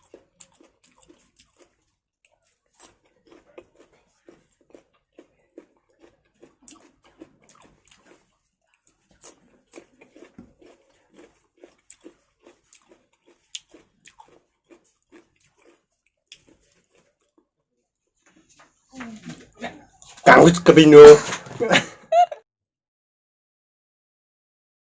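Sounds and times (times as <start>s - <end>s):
person chewing food: 0.0s - 20.2s
wet mouth smacks and clicks: 6.6s - 8.2s.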